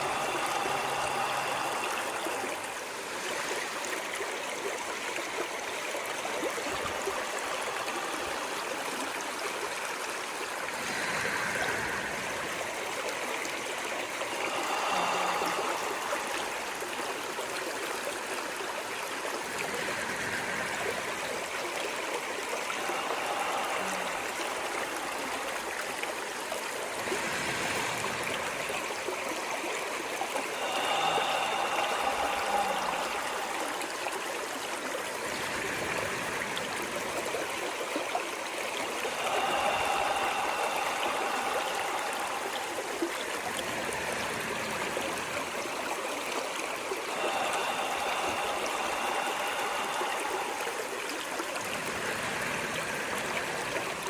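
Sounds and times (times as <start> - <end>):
stream water rushing: 0.0 - 54.0.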